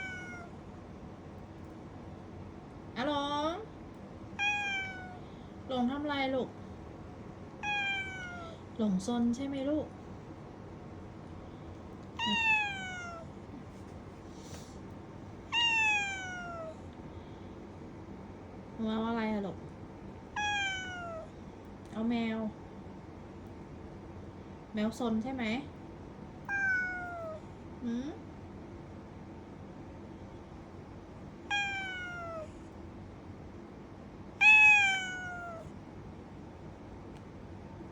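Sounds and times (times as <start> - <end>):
cat meowing: 0.0 - 0.6, 4.4 - 5.2, 7.6 - 8.6, 12.2 - 13.3, 15.5 - 16.9, 20.4 - 21.4, 26.4 - 27.5, 31.4 - 32.6, 34.4 - 35.7.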